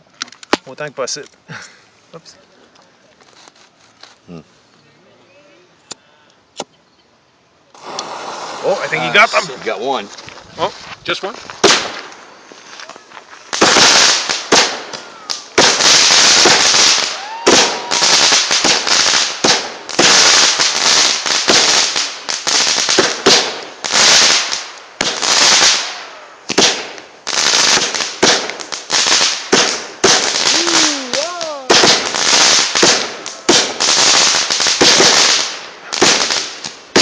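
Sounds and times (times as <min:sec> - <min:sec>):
fireworks hissing and crackling: 0:07.7 - 0:37.0
fireworks banging: 0:07.8 - 0:10.0, 0:11.3 - 0:37.0
firework whistle: 0:14.6 - 0:18.9.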